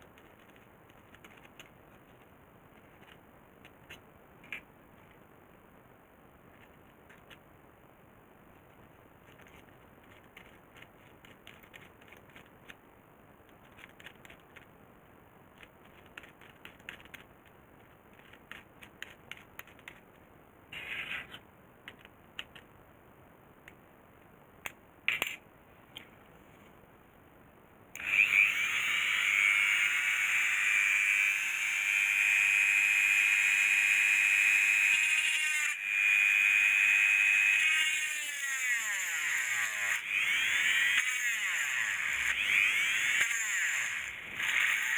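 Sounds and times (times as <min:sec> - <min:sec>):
small handling clicks: 0:21.8 - 0:22.7, 0:24.6 - 0:26.1
small electric motor whine: 0:28.0 - 0:44.9.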